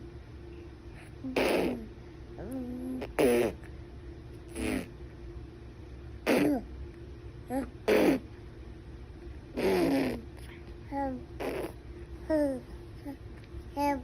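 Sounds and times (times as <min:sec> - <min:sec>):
baby babbling and grunting: 0:01.2 - 0:03.6, 0:06.3 - 0:06.7, 0:07.5 - 0:08.3, 0:09.6 - 0:13.2.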